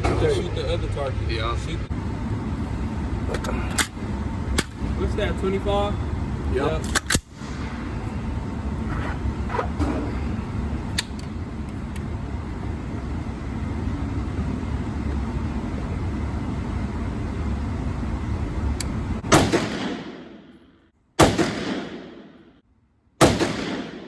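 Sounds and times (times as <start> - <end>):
low background rumble: 0.0 - 24.0
rifle shots: 19.3 - 20.6, 21.2 - 22.5, 23.2 - 24.0.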